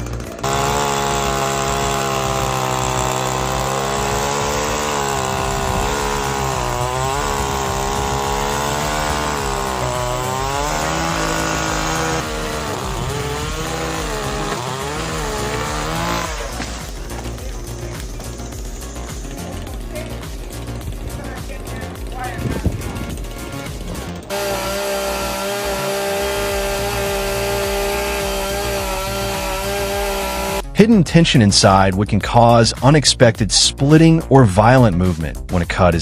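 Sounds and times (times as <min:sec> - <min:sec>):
chainsaw engine running: 0:00.0 - 0:30.8.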